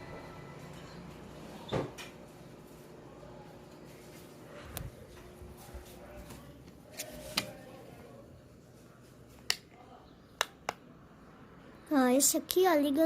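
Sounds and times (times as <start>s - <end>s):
ceiling fan hum: 0.0s - 13.0s.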